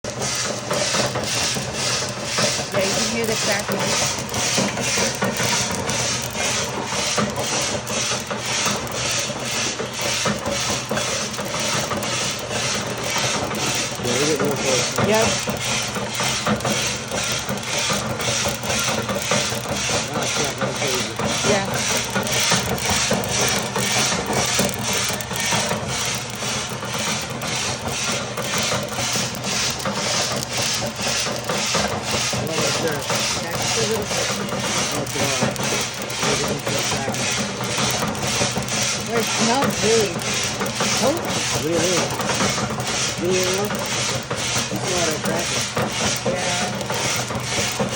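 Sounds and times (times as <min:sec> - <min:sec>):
coffee beans tumbling in drum: 0:00.0 - 0:47.9
roaster humming: 0:00.0 - 0:47.9
coffee beans cracking: 0:00.1 - 0:47.9.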